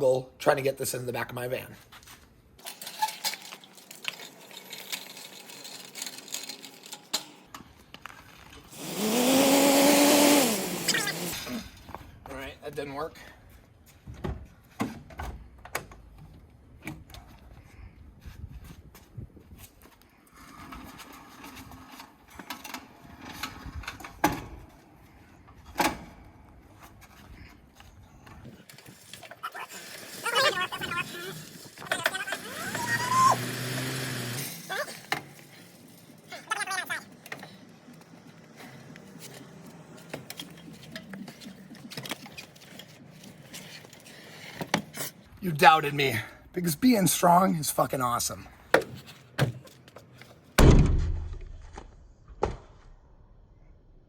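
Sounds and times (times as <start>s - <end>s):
person yelling with strain: 10.8s - 11.7s, 29.4s - 34.0s, 34.6s - 35.1s.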